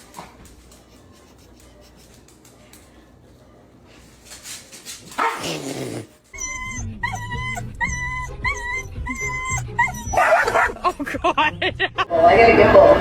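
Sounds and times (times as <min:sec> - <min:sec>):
dog vocalizing: 0:05.2 - 0:10.7.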